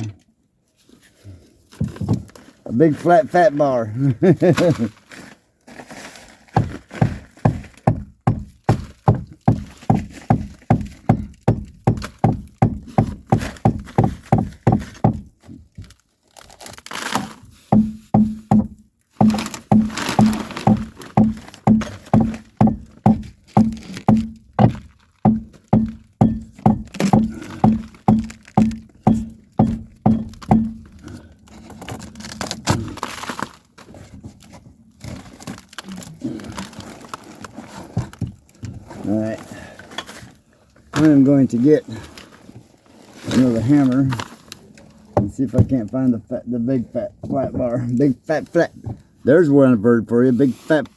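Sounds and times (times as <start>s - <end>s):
hammer blows on wooden beam: 17.7s - 24.7s, 25.3s - 30.9s.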